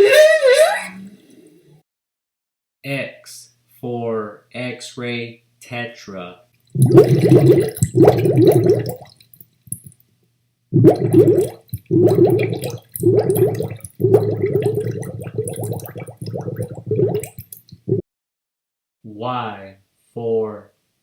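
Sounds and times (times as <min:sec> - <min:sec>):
water bubbling and gurgling: 0:06.8 - 0:09.9, 0:10.8 - 0:18.0.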